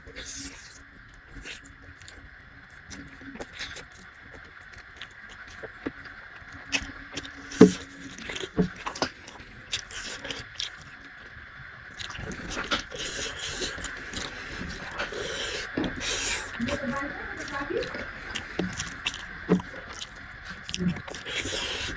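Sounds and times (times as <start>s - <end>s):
chewing: 0.0s - 21.9s.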